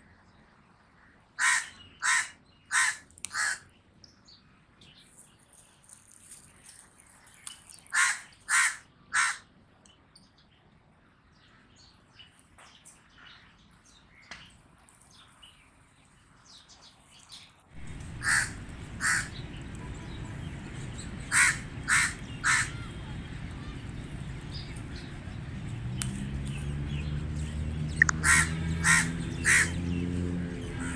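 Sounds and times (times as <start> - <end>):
raven calling: 1.4 - 3.7, 7.9 - 9.5, 17.8 - 19.8, 20.9 - 24.7, 28.0 - 29.8
low background rumble: 17.8 - 30.9.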